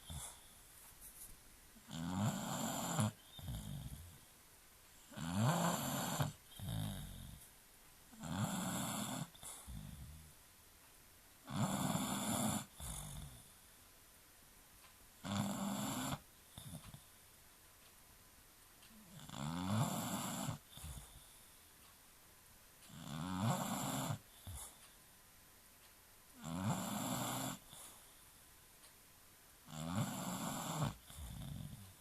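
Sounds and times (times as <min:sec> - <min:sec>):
dog snoring: 0:00.0 - 0:00.5, 0:01.8 - 0:04.3, 0:05.0 - 0:07.5, 0:08.1 - 0:10.4, 0:11.4 - 0:13.6, 0:15.2 - 0:17.1, 0:18.9 - 0:21.4, 0:22.9 - 0:24.8, 0:26.4 - 0:28.1, 0:29.7 - 0:32.0.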